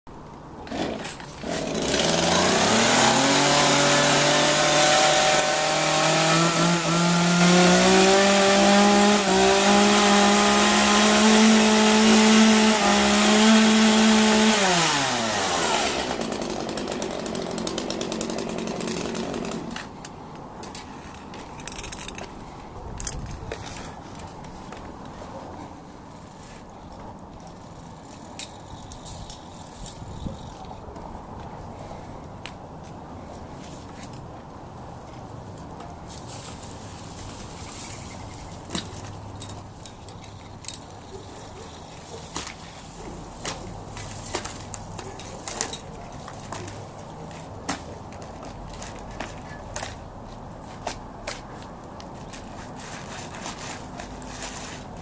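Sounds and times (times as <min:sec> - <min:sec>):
chainsaw running: 0:00.7 - 0:19.8.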